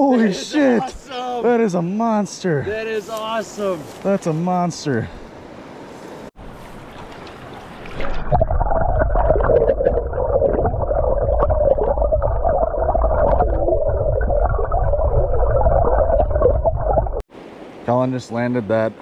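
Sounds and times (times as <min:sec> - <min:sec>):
underwater river current gurgling: 0:06.4 - 0:17.2.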